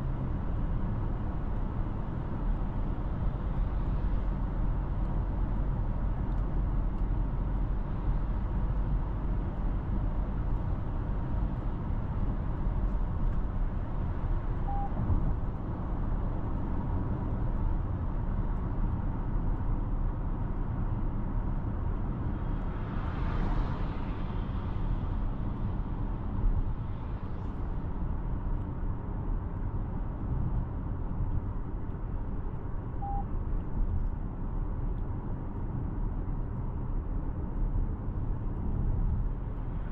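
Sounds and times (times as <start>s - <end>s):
car engine rumble: 0.0s - 39.9s
road noise: 0.0s - 39.9s
faint short beeps: 14.6s - 15.0s, 33.0s - 33.3s.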